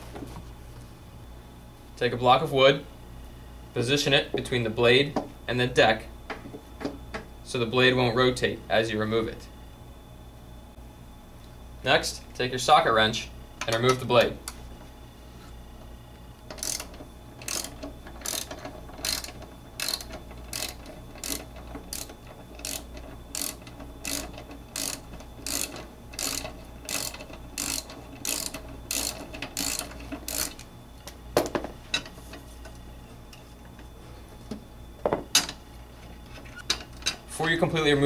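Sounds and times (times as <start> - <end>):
socket wrench ratcheting: 16.5 - 30.6.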